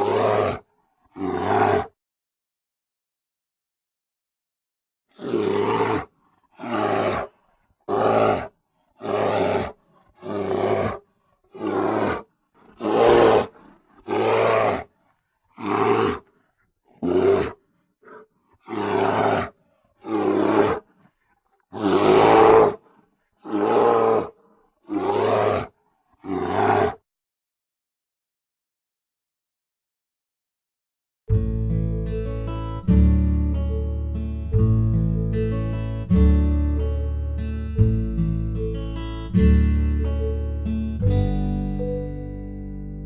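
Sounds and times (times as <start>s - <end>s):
bear roaring: 0.0s - 2.0s, 5.1s - 21.1s, 21.7s - 27.0s.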